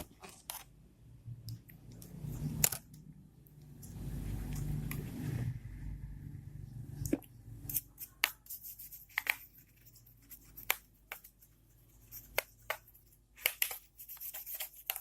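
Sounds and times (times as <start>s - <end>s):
hands scraping plastic laptop: 12.0s - 15.0s.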